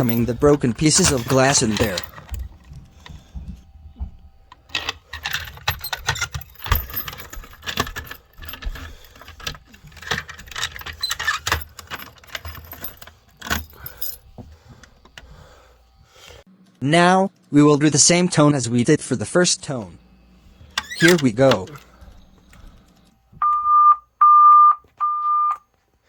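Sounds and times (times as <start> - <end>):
metallic jangling and rattles: 0.0 - 15.6, 20.6 - 23.1.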